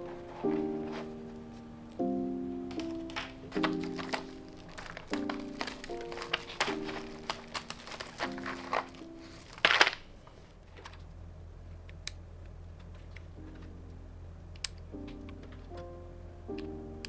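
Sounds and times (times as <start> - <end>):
soft background music: 0.0 - 10.2, 11.3 - 17.0
plastic rustle: 0.0 - 11.2
sharp plastic clicks: 2.7 - 13.7.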